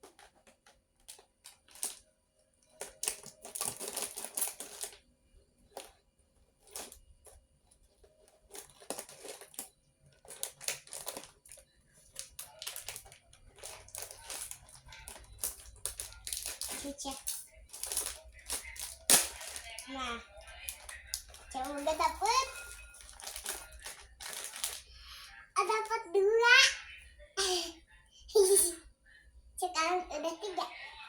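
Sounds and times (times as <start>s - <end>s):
plastic packets crinkling: 0.0s - 5.0s, 6.6s - 25.2s.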